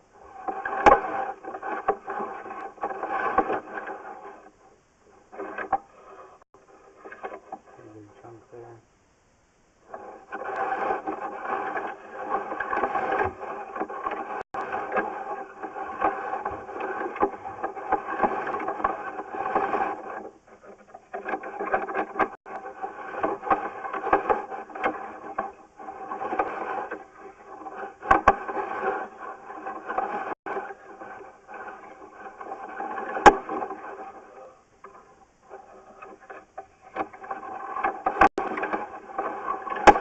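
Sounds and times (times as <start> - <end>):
cable squealing and scraping in drain: 9.9 - 40.0.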